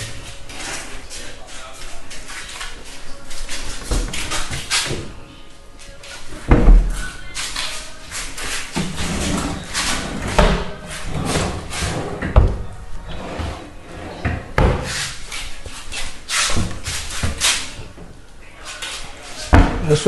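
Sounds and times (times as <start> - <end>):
cabinet doors and drawers opening: 8.8 - 15.1.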